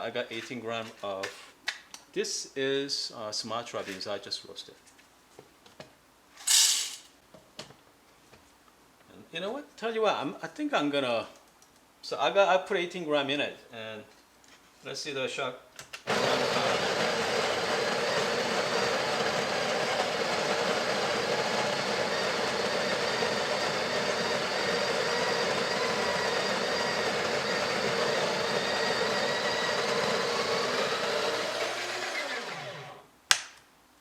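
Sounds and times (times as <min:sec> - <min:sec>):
coffee grinder running: 0:16.1 - 0:33.0.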